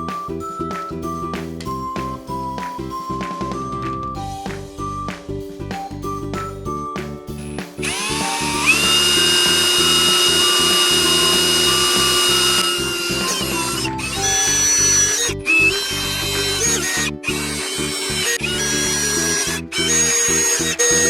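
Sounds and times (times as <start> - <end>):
power tool motor whining: 7.8 - 21.0.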